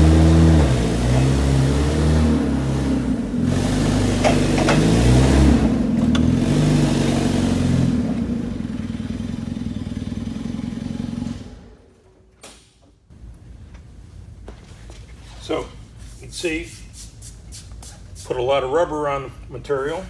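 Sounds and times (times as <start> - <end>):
forklift engine revving: 0.0 - 12.0.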